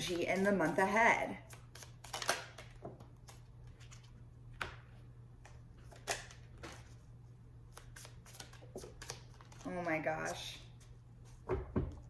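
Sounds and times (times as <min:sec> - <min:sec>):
cards clicking and snapping: 0:01.5 - 0:03.4.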